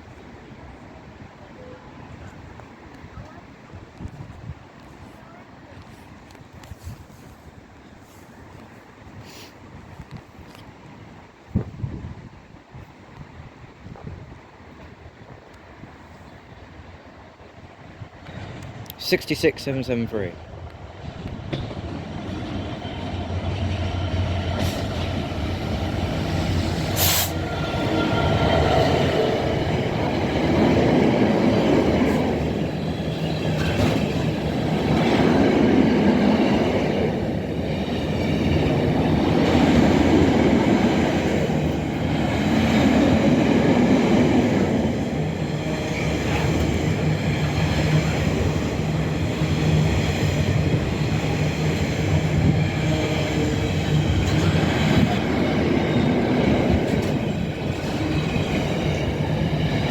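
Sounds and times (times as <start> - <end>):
freight train wagons rumbling: 16.5 - 59.9.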